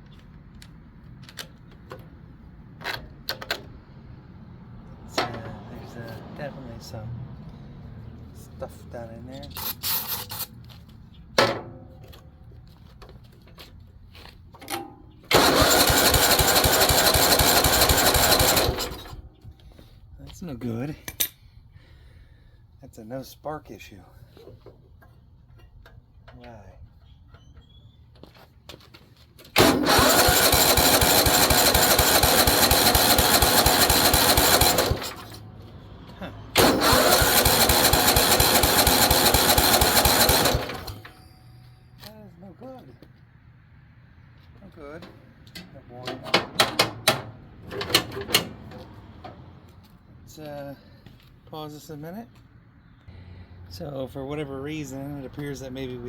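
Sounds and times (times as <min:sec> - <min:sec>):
engine cranking with starter: 0:09.5 - 0:10.5, 0:14.7 - 0:19.4, 0:29.5 - 0:35.5, 0:36.5 - 0:41.3, 0:46.1 - 0:49.4
metallic clank: 0:14.6 - 0:15.5.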